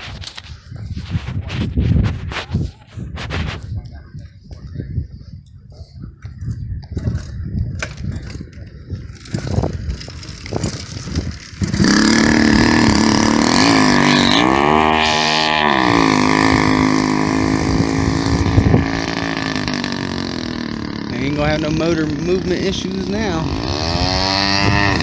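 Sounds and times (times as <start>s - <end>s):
two-stroke engine starting and running: 9.0s - 25.0s.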